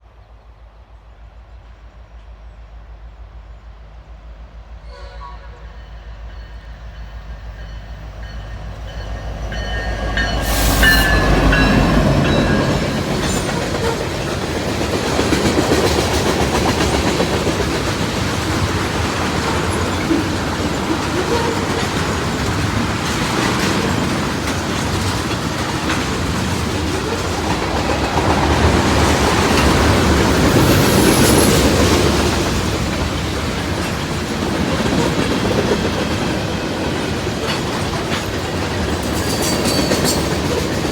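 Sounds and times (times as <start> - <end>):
train passing: 0.0 - 40.9
train horn chord: 4.8 - 6.6
wheels clattering over rail joints: 8.9 - 40.9.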